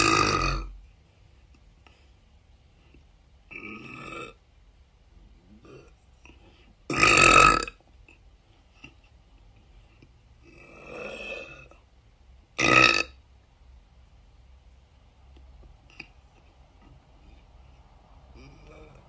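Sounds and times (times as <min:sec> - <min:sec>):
woman burping: 0:00.0 - 0:00.7, 0:06.9 - 0:07.8, 0:12.6 - 0:13.2.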